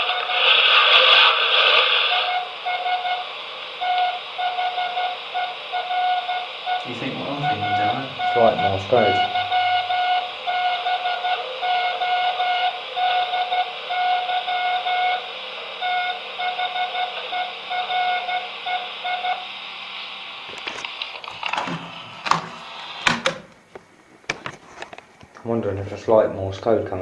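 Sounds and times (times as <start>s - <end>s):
steady hiss: 0.0s - 27.0s
morse code beeps: 2.1s - 3.2s, 3.8s - 15.2s, 15.8s - 19.4s.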